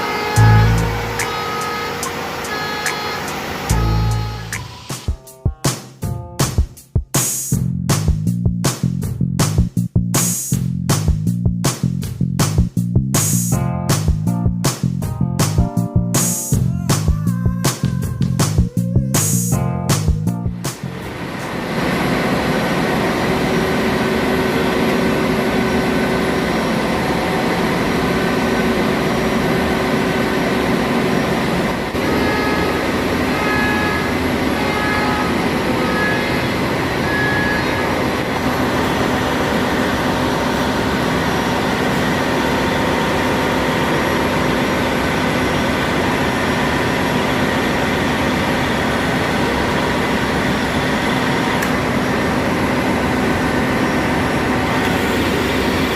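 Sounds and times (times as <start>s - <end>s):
engine room machinery noise: 0.0s - 5.1s, 19.2s - 55.9s.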